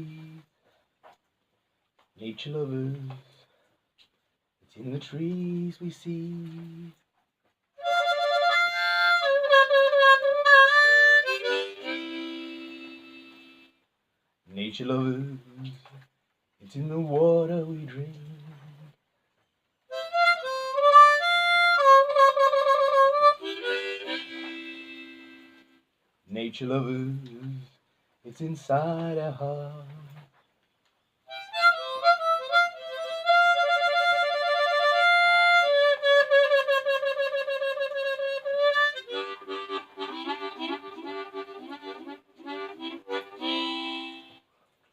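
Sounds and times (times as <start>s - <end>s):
harmonica playing: 7.8s - 13.8s, 19.9s - 25.8s, 31.3s - 44.5s.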